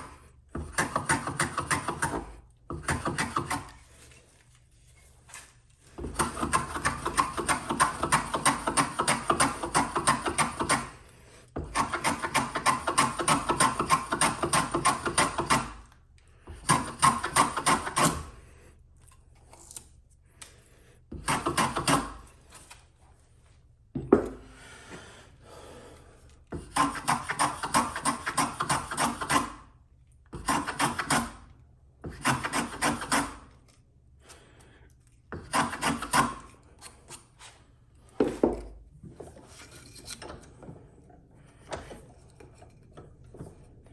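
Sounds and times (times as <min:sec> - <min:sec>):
hand saw scraping wood: 0:00.0 - 0:15.8, 0:16.5 - 0:18.6, 0:21.1 - 0:22.7, 0:26.6 - 0:29.6, 0:30.3 - 0:33.5, 0:35.3 - 0:38.5, 0:39.2 - 0:40.8.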